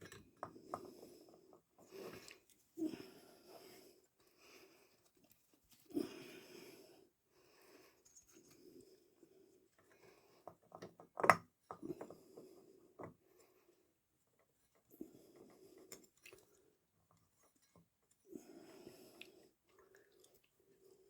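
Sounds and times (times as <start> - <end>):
soft breathy noise: 0.6 - 10.5.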